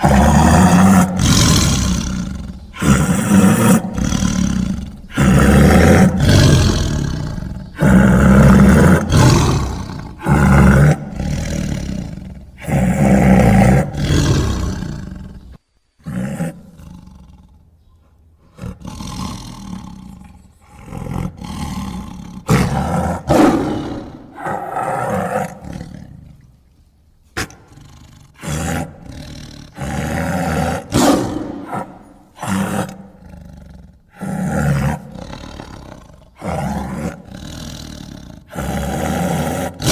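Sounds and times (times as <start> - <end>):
monster roars: 0.0 - 15.4, 28.4 - 39.9.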